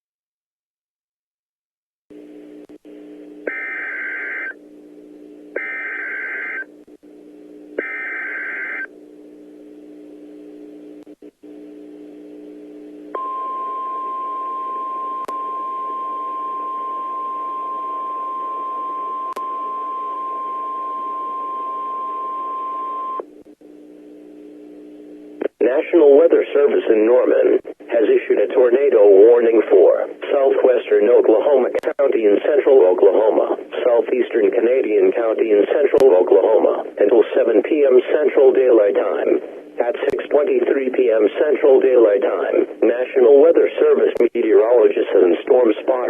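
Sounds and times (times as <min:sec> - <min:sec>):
low steady radio hum: 0:02.1 - 0:46.0
steady high alarm tone: 0:05.6 - 0:06.6, 0:13.2 - 0:23.2.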